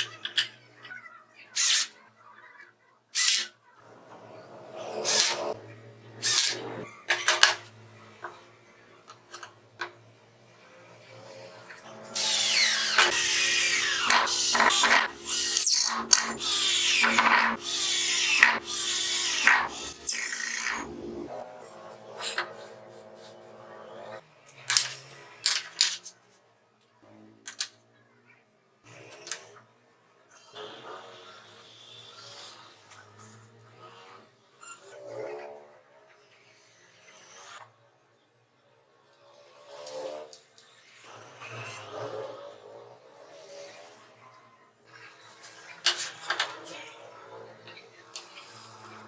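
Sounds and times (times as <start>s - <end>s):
power drill cutting into wood: 5.0s - 5.5s, 12.0s - 20.9s
tools clicking and knocking: 12.9s - 20.8s
steady hum: 13.0s - 21.3s.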